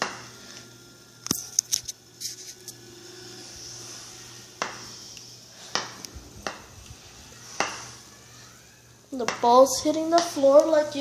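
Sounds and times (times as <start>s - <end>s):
rubber ball bouncing on hard floor: 4.6s - 4.9s, 5.7s - 6.7s, 7.6s - 7.9s.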